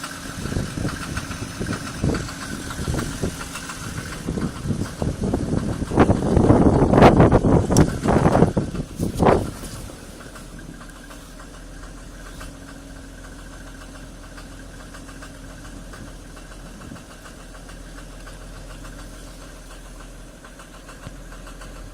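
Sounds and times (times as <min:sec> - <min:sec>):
diesel engine idling: 0:00.0 - 0:21.9
injector clatter: 0:00.0 - 0:21.9.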